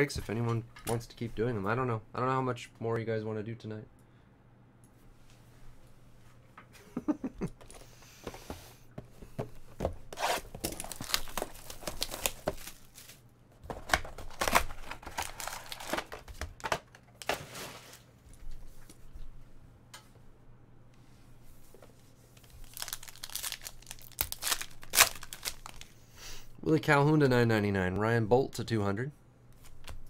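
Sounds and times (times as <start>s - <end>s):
card packs ripping and rustling: 10.2s - 18.1s, 22.4s - 25.9s.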